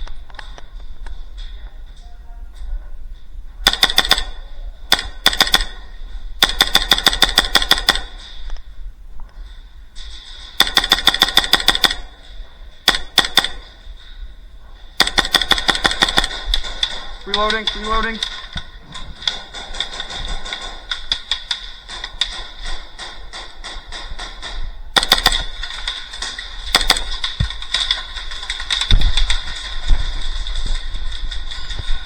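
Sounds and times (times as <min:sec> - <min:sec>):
airsoft gun full-auto bursts: 0:03.6 - 0:05.8, 0:06.4 - 0:08.2, 0:10.6 - 0:12.2, 0:12.8 - 0:13.6, 0:15.0 - 0:18.2, 0:25.0 - 0:25.9, 0:26.6 - 0:28.0.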